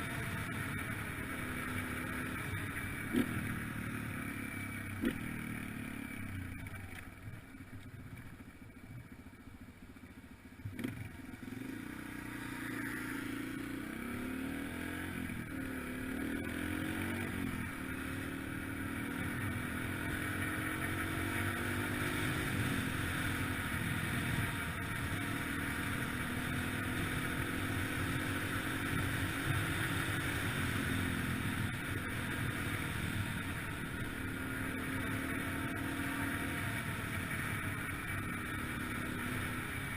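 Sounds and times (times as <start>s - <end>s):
dirt bike engine revving: 0.0s - 6.3s.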